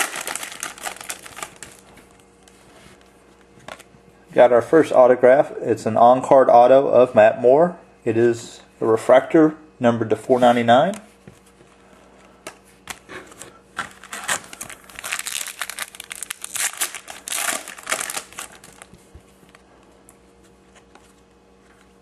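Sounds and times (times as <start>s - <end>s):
wrapper crinkling: 0.0s - 2.6s, 13.8s - 19.0s.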